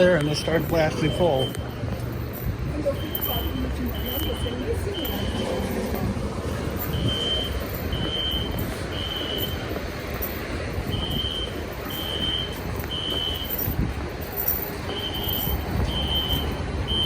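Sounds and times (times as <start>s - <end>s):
fire alarm horn beeps: 0.0s - 1.7s, 2.9s - 5.5s, 6.8s - 9.7s, 10.9s - 13.8s, 14.9s - 17.0s.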